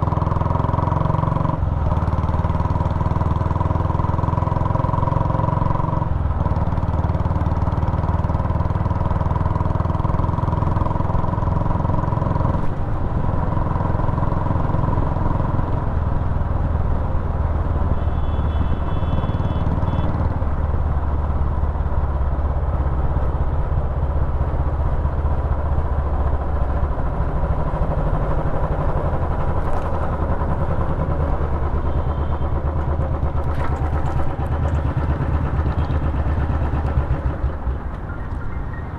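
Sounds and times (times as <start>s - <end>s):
motorcycle engine thumping: 25.8s - 38.9s.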